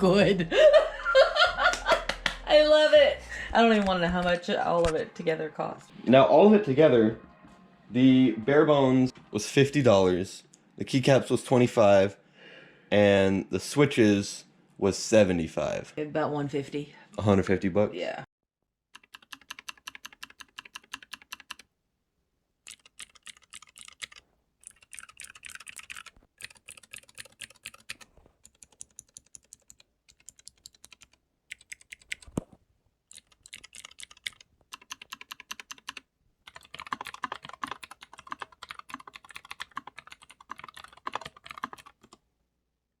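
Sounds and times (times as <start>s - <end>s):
clicky keyboard typing: 19.0s - 21.7s, 22.6s - 32.5s, 33.1s - 42.2s.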